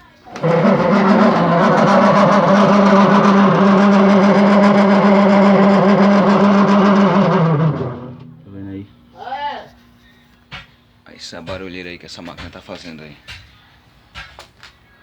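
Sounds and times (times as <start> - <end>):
washing machine motor humming: 0.0 - 9.6
fast rattle: 0.3 - 8.4.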